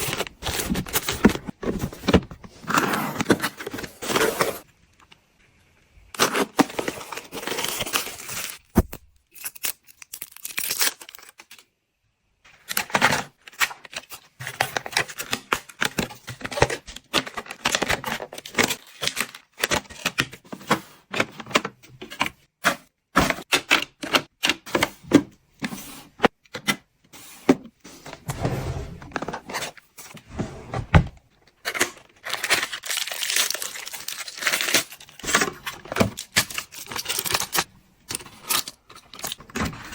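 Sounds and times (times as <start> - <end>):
plastic packaging rustling and tearing: 6.1 - 11.7, 31.6 - 39.9.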